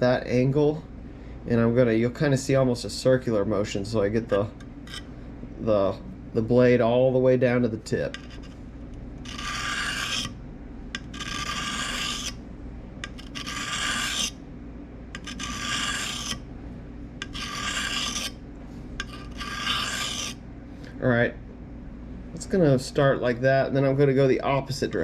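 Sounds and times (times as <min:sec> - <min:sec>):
knife scraping on sharpening stone: 0:04.9 - 0:05.1, 0:08.1 - 0:08.6, 0:09.2 - 0:10.4, 0:11.0 - 0:12.4, 0:13.0 - 0:14.4, 0:15.2 - 0:16.4, 0:17.2 - 0:18.4, 0:19.0 - 0:20.4.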